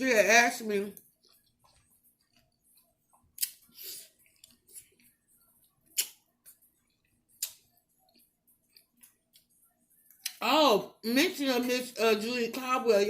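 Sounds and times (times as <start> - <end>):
sharp eating clicks: 1.0 - 10.4
soft mouth noises: 1.2 - 10.3.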